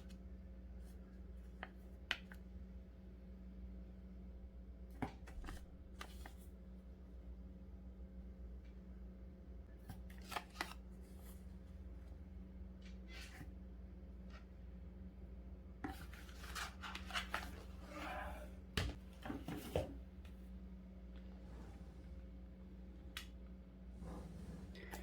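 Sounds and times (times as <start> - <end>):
paper rustling: 15.8 - 18.0
low hum: 20.0 - 25.0.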